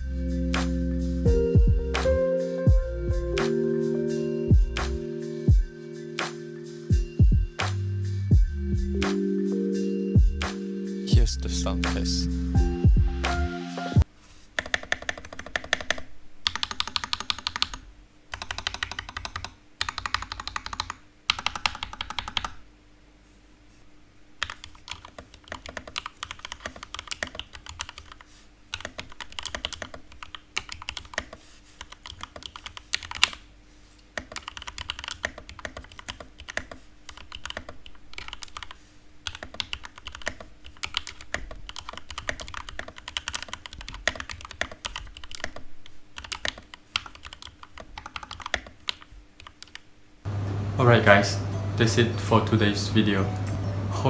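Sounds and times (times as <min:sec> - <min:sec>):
mechanical keyboard typing: 0:14.6 - 0:22.6, 0:24.4 - 0:33.4, 0:34.2 - 0:45.6, 0:46.2 - 0:49.8.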